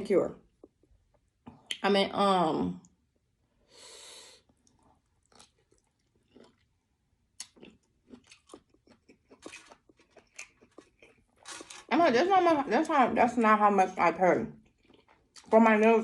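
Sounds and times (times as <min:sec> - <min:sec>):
person chewing food: 0:04.4 - 0:11.9, 0:14.6 - 0:15.5.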